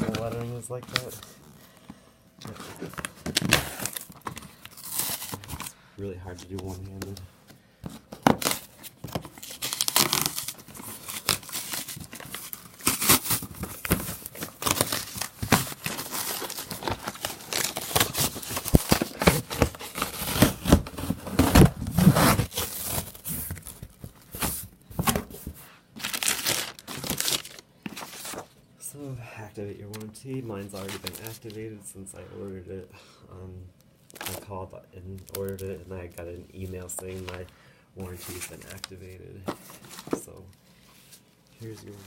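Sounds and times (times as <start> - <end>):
packaging tearing and crinkling: 2.6 - 5.7, 8.2 - 24.6, 26.0 - 28.4.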